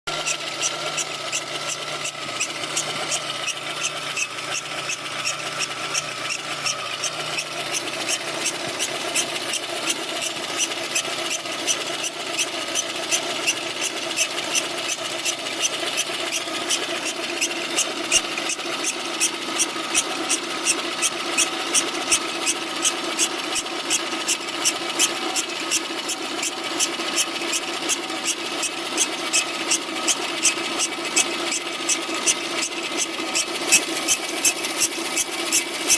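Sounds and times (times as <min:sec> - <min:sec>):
car engine idling: 0:00.1 - 0:35.9
regular ticking: 0:00.1 - 0:35.9.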